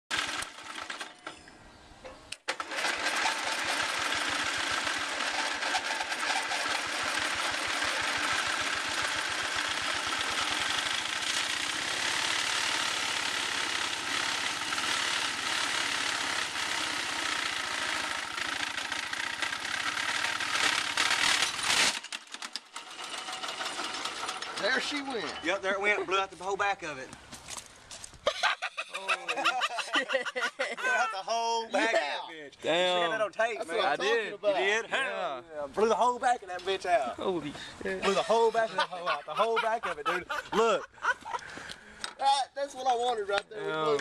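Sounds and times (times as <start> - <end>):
riding lawn mower engine revving: 0.1 - 1.3, 2.4 - 25.4.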